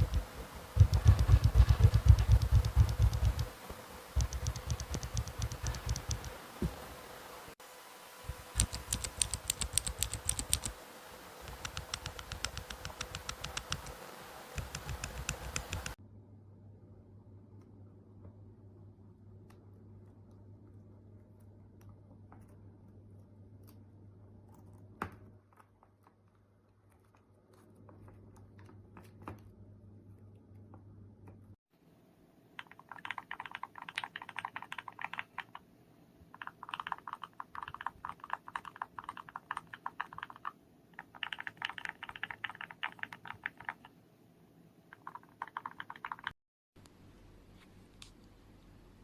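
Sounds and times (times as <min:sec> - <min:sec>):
low hum: 0:00.0 - 0:21.8
keyboard switches clicking: 0:04.2 - 0:06.3, 0:08.6 - 0:10.7, 0:11.5 - 0:13.9, 0:14.6 - 0:16.0.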